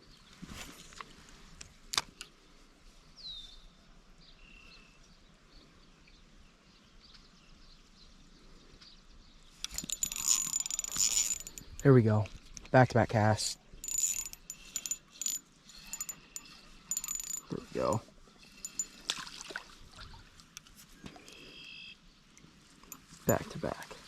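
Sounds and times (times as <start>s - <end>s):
fishing reel whirring: 9.6s - 11.9s, 13.8s - 19.0s
faint bird chirps: 21.0s - 22.1s.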